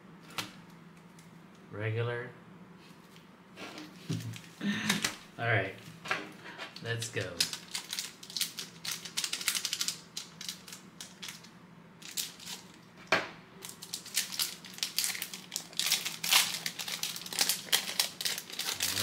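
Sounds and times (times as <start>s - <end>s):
foil wrapper tearing and crinkling: 7.2s - 12.8s, 13.6s - 19.0s.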